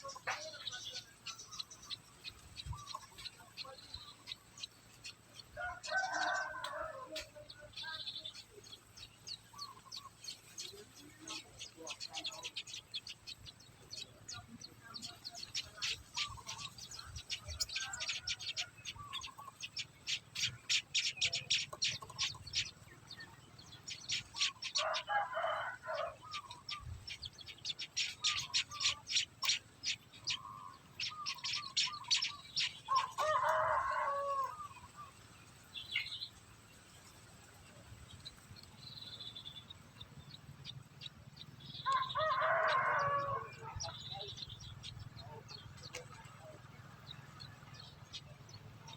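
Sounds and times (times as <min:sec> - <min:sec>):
finches chirping: 0:07.7 - 0:33.7.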